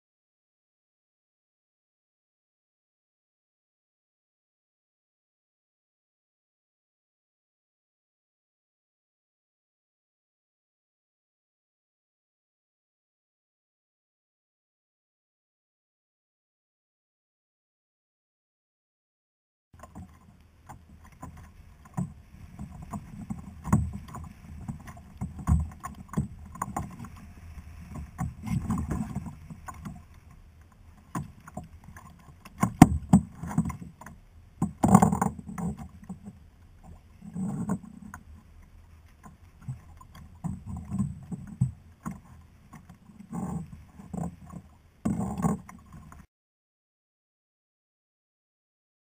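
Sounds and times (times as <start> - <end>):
water lapping against kayak hull: 19.8 - 46.3.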